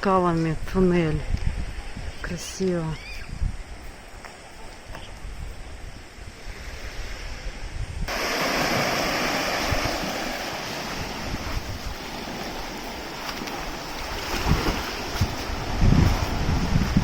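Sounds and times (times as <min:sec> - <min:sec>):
wind buffeting microphone: 0:00.0 - 0:17.0
sea surf rushing: 0:05.7 - 0:17.0.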